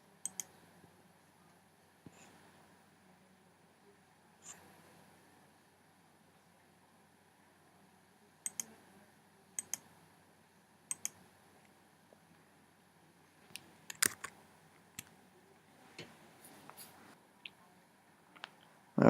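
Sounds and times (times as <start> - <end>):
computer mouse clicking: 0.2 - 0.6, 8.4 - 8.7, 9.6 - 9.9, 10.9 - 11.2, 13.5 - 14.4
computer mouse clicks: 0.2 - 0.6, 8.4 - 8.7, 9.6 - 9.9, 10.9 - 11.2, 13.5 - 14.4.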